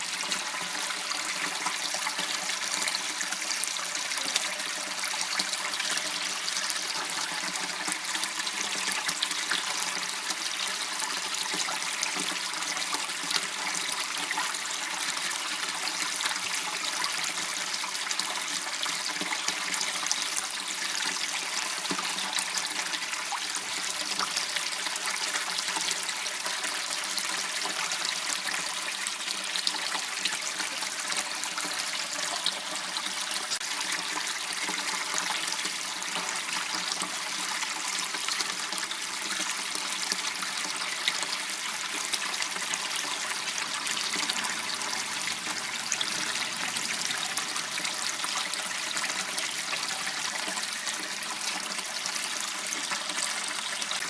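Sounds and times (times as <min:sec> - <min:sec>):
water trickling in a channel: 0:00.0 - 0:54.0.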